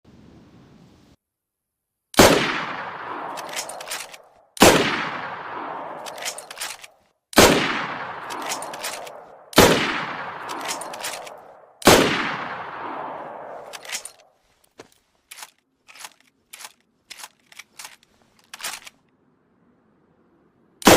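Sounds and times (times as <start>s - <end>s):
rifle shots echoing: 2.2s - 14.3s
rifle bolt metallic clicks: 3.3s - 4.7s, 6.0s - 7.5s, 8.2s - 9.7s, 10.4s - 12.0s, 13.6s - 19.1s.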